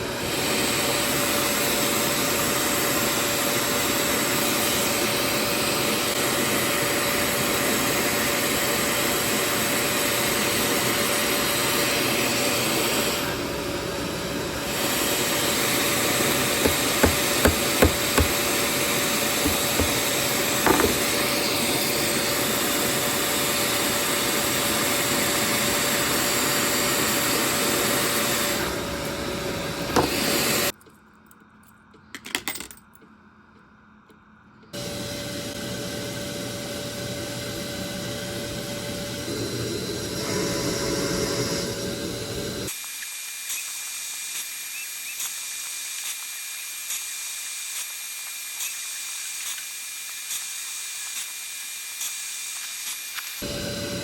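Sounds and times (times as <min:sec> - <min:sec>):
electric grinder running: 0:14.2 - 0:30.7, 0:34.8 - 0:42.8
small knocks: 0:16.6 - 0:18.4, 0:19.4 - 0:21.1.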